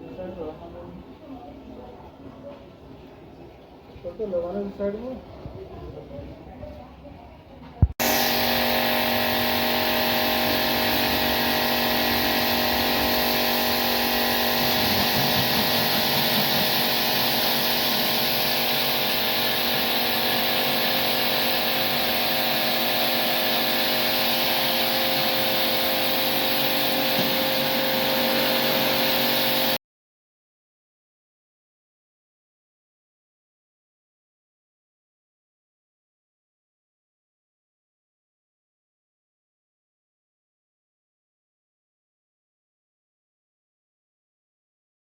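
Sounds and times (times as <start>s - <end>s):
machine motor humming and hissing: 8.0s - 29.8s.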